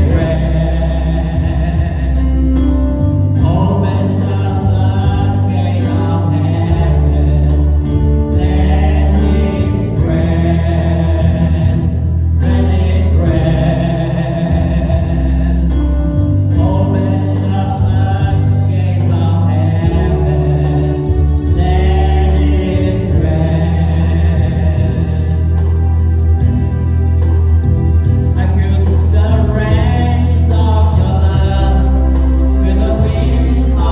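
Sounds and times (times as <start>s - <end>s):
band with bass and drums: 0.0s - 33.9s
choir singing gospel: 0.0s - 33.9s.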